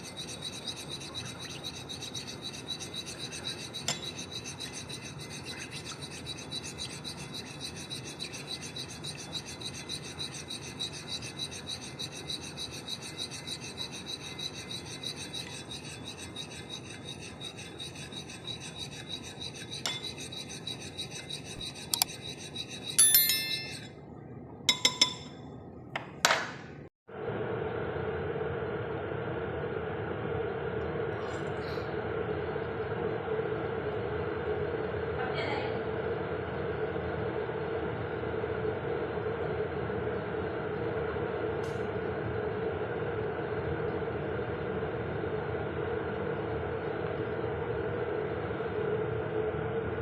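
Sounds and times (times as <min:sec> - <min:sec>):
rapid rhythmic scraping: 0:00.0 - 0:23.0.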